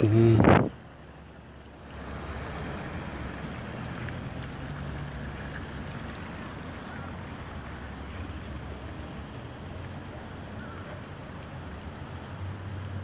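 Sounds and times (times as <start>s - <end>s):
wind on microphone: 0.0s - 0.8s.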